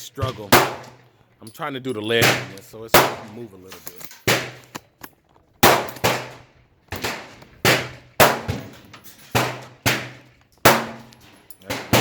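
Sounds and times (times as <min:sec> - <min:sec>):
gunshots echoing: 0:00.2 - 0:01.1, 0:02.2 - 0:03.5, 0:04.2 - 0:04.7, 0:05.6 - 0:12.0.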